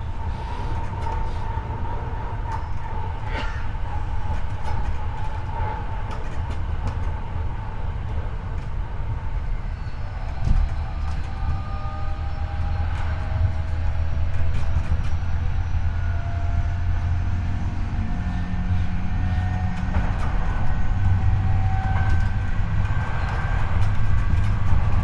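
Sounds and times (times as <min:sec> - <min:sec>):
train wheels rumbling on rail: 0:00.0 - 0:25.0.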